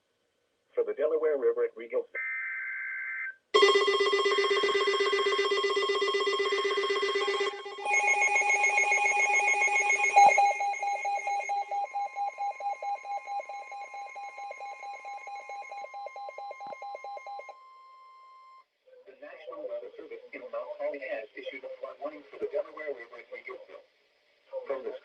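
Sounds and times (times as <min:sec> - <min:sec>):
electronic emergency alert tone: 0:02.2 - 0:17.6.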